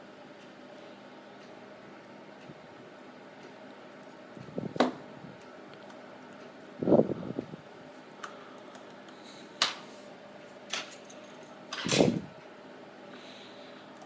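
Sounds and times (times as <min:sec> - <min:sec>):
clicks and taps of tools: 0:08.2 - 0:09.8.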